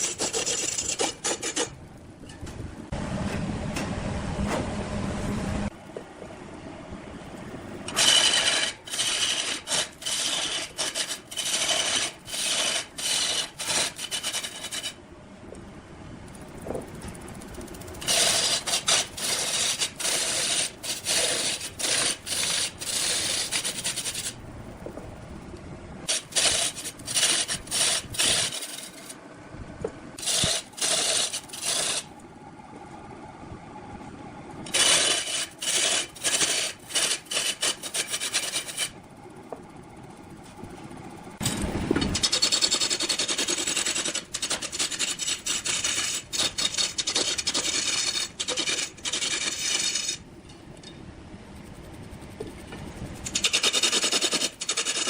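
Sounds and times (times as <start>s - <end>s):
tool rasping on wood: 0.0s - 1.7s, 8.0s - 15.0s, 18.0s - 24.4s, 26.1s - 29.1s, 30.2s - 32.1s, 34.7s - 38.9s, 42.2s - 50.2s, 53.3s - 55.0s.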